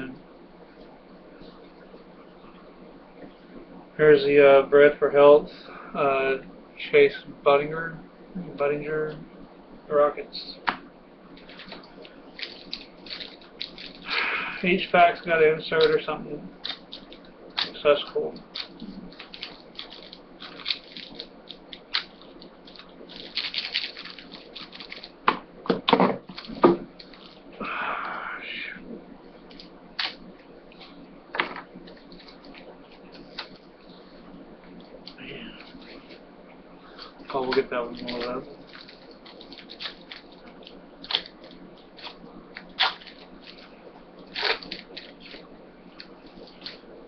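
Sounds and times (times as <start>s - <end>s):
card wrappers rustling and crinkling: 11.3s - 27.6s, 28.8s - 36.2s, 36.8s - 47.0s.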